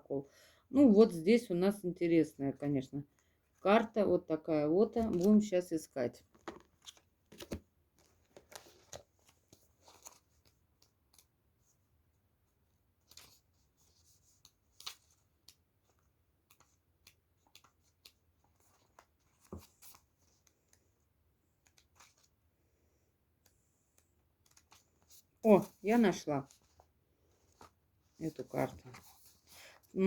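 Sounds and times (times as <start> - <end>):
cards rustling and clicking: 6.3 - 11.6, 13.0 - 22.5, 23.3 - 29.9.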